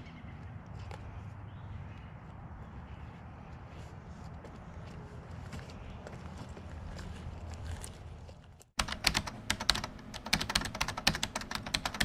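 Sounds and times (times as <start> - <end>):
rapid sharp clicks: 8.8 - 12.0.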